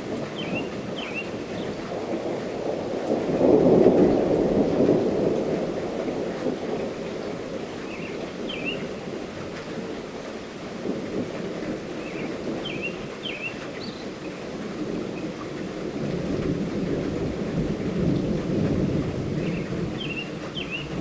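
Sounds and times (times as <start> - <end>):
light rainfall: 0.0 - 21.0
low thunder rumble: 0.0 - 21.0
bird chirping: 0.4 - 1.7, 7.9 - 8.9, 12.0 - 14.0, 19.4 - 21.0.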